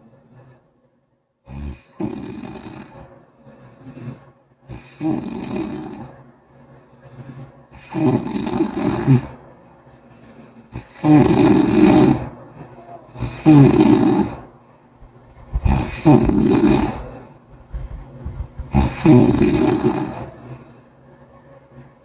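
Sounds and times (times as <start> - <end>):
person snoring wetly: 1.5 - 3.1, 3.9 - 6.1, 7.7 - 9.4, 10.7 - 12.4, 13.1 - 14.4, 15.6 - 17.4, 18.5 - 20.8
person breathing: 3.3 - 5.1, 6.7 - 7.9, 15.4 - 21.0.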